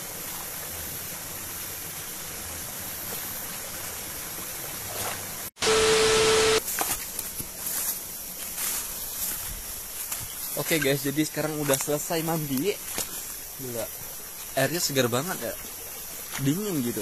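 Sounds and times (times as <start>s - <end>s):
forest stream rushing: 0.0s - 6.6s, 8.6s - 17.0s
steady hum: 5.6s - 6.6s.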